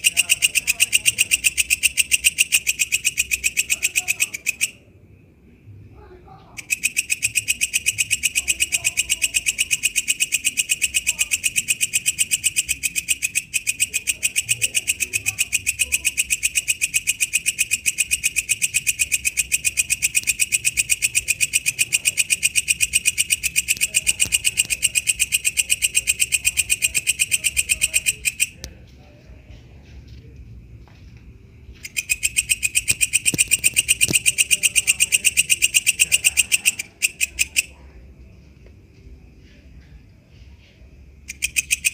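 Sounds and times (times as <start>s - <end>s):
insect chirping shrilly: 0.0s - 4.8s, 6.6s - 28.7s, 31.8s - 37.8s.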